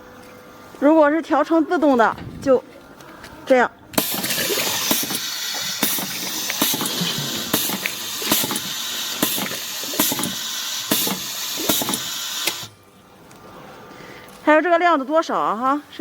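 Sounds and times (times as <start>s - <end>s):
hissing air and machinery: 4.0s - 12.8s
sharp pneumatic bursts: 4.0s - 12.8s.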